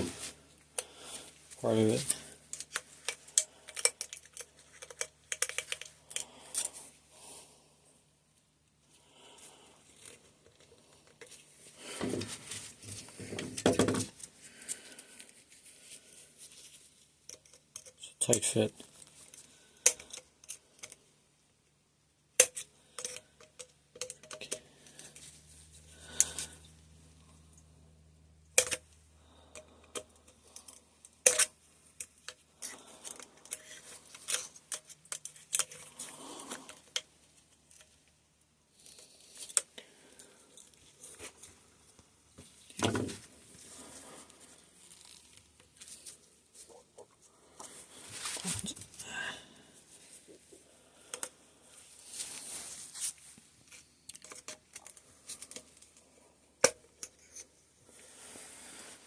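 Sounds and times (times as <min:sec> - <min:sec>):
metal parts and tools clinking: 0:01.8 - 0:06.8, 0:17.3 - 0:21.0, 0:22.4 - 0:25.3, 0:28.6 - 0:28.9, 0:29.5 - 0:38.0.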